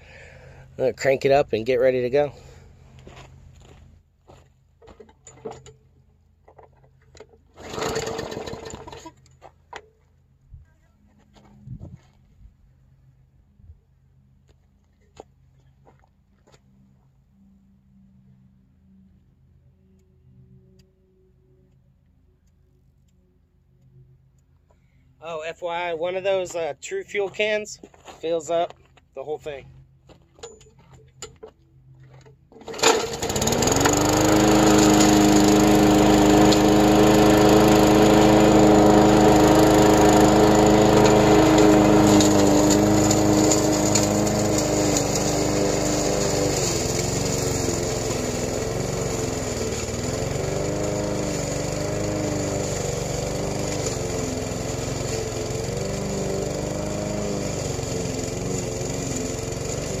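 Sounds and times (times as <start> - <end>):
lawn mower engine running: 0.0 - 3.8, 4.8 - 9.9, 32.1 - 60.0
lawn mower pull-start: 4.8 - 10.0, 30.4 - 60.0.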